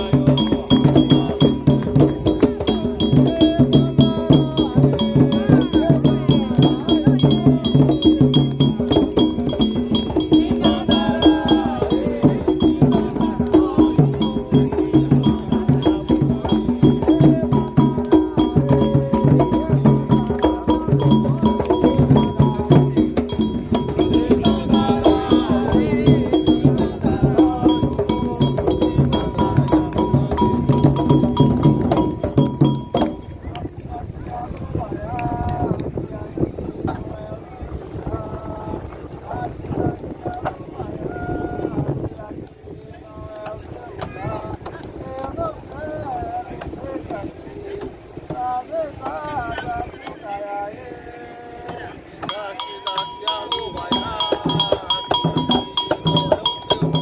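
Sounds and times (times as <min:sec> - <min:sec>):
hand drums playing fast rhythm: 0:00.0 - 0:33.7, 0:52.2 - 0:57.0
voices singing: 0:00.0 - 0:57.0
dry wooden struck pattern: 0:52.3 - 0:57.0.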